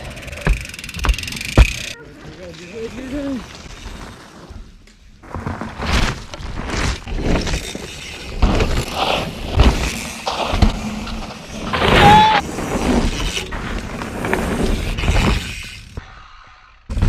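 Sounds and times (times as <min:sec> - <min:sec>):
bike rattling over bumps: 0:00.0 - 0:16.0
tyres skidding over loose dirt: 0:00.0 - 0:16.0
short squeal: 0:11.8 - 0:12.4.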